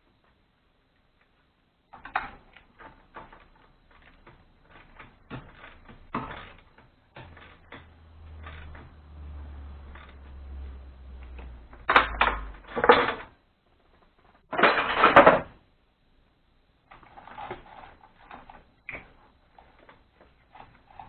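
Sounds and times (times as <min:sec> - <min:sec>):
metallic ratcheting: 0:02.0 - 0:13.3.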